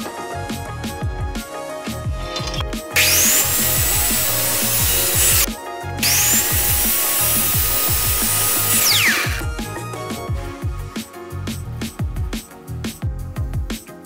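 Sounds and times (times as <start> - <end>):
power tool cutting wood: 2.3 - 9.5.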